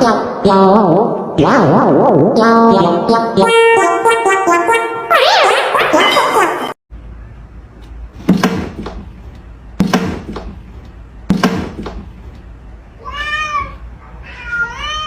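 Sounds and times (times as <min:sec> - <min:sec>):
sharp knocks: 0:08.3 - 0:09.1, 0:09.8 - 0:10.6, 0:11.3 - 0:12.1
cat meowing: 0:13.0 - 0:15.0.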